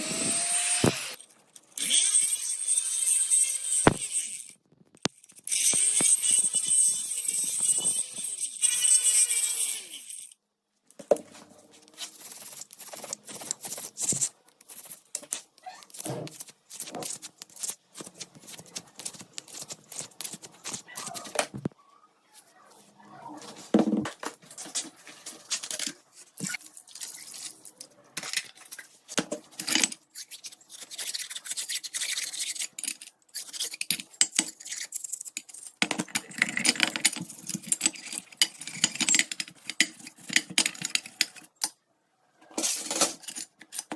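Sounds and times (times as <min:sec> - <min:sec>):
metal parts clicking and tapping: 0:33.8 - 0:41.8.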